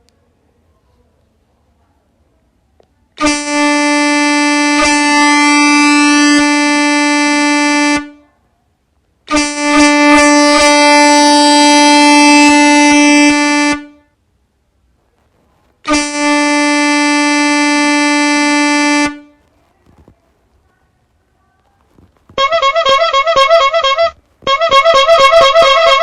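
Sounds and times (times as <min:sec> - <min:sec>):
air horn blasts: 0:03.2 - 0:08.3, 0:09.3 - 0:14.1, 0:15.8 - 0:19.4, 0:22.3 - 0:26.0.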